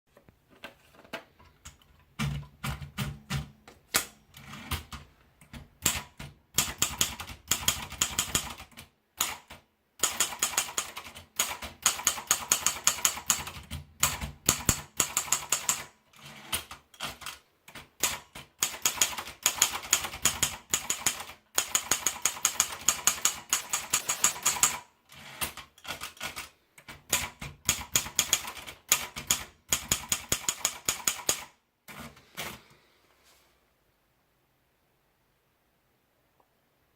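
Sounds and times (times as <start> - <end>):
typewriter key strikes: 18.0 - 24.8.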